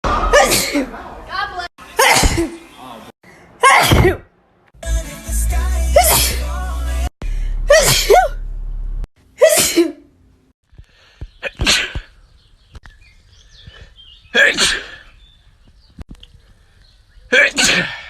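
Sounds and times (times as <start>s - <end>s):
people sneezing: 2.0s - 2.6s, 6.0s - 6.4s, 7.7s - 8.3s, 11.4s - 12.1s, 14.4s - 15.1s, 17.3s - 18.0s
low hum: 6.8s - 9.1s.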